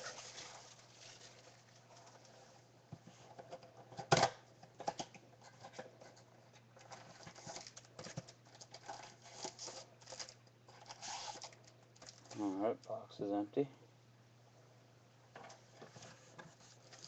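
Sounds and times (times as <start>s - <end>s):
packs rustling and crinkling: 8.5s - 12.5s, 16.6s - 17.0s.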